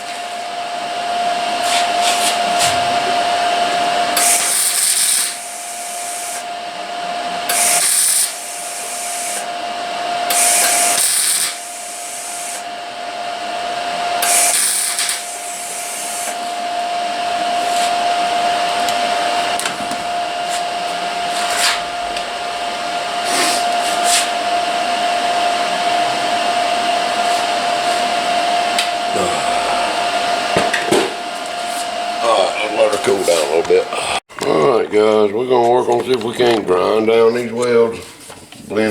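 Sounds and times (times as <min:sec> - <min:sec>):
fan hum: 0:00.0 - 0:38.9
welding arc on sheet metal: 0:04.1 - 0:06.5, 0:07.4 - 0:09.5, 0:10.2 - 0:12.6, 0:14.2 - 0:16.6.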